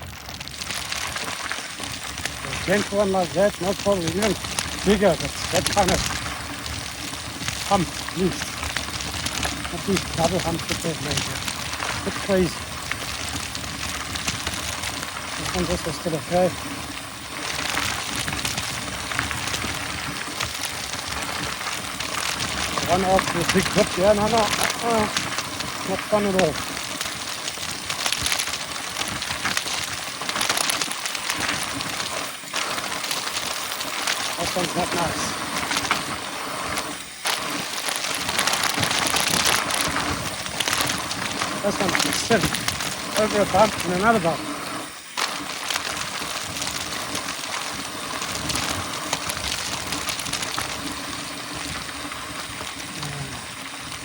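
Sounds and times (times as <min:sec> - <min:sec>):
bike knocking and rattling: 0:00.0 - 0:53.0
bike tyres crunching on dirt: 0:00.0 - 0:54.0.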